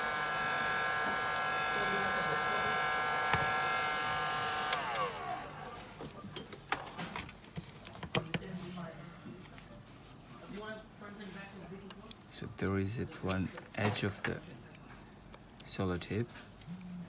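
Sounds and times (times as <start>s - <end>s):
heat gun whining: 0.0s - 5.6s.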